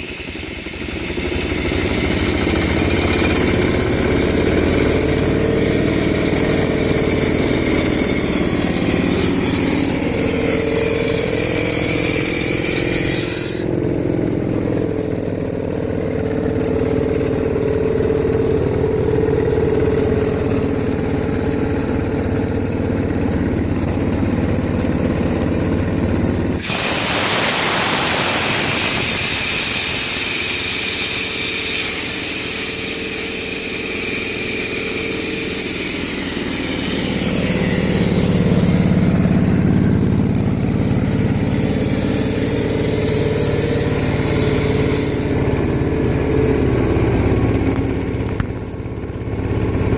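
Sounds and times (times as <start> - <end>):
loud hiss: 0.0 - 3.2, 26.6 - 39.6
diesel engine running: 0.0 - 49.9.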